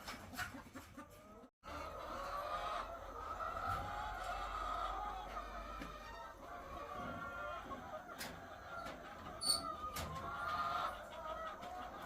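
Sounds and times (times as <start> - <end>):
hens clucking and calling: 0.0 - 12.0.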